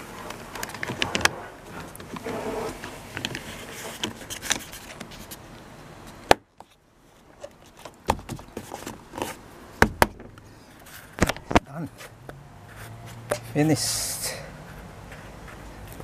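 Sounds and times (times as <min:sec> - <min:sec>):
plastic car parts clicking: 0:00.1 - 0:02.2.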